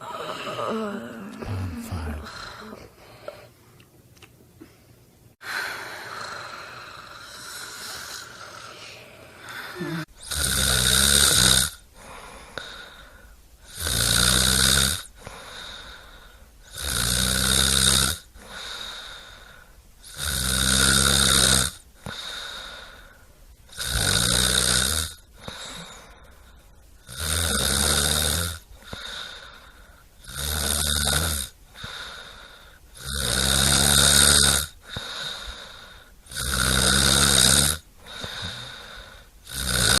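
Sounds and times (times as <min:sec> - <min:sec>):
quiet breathing: 0:00.0 - 0:03.9, 0:04.6 - 0:10.1, 0:11.8 - 0:13.6, 0:15.1 - 0:16.8, 0:18.3 - 0:20.0, 0:21.8 - 0:23.7, 0:25.2 - 0:27.0, 0:28.6 - 0:30.2, 0:31.6 - 0:33.0, 0:34.7 - 0:36.3, 0:37.9 - 0:40.0
loud rattling snoring: 0:10.2 - 0:11.8, 0:13.7 - 0:15.1, 0:16.7 - 0:18.3, 0:20.1 - 0:21.8, 0:23.7 - 0:25.3, 0:27.0 - 0:29.2, 0:30.2 - 0:32.2, 0:33.0 - 0:35.2, 0:36.3 - 0:40.0.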